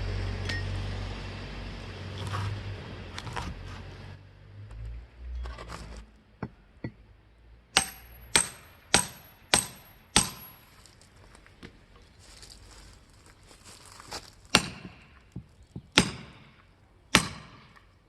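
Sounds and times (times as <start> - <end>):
low rumbling: 0.0 - 8.4
metal tool striking firewood: 7.8 - 10.7, 14.5 - 15.2, 15.8 - 17.9.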